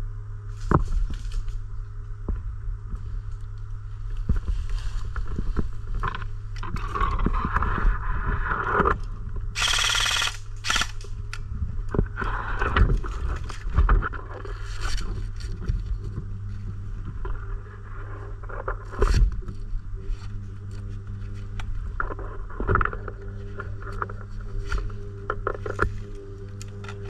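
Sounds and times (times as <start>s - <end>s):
low rumble of handling noise: 0.0s - 27.0s
airsoft gun full-auto burst: 9.6s - 11.0s.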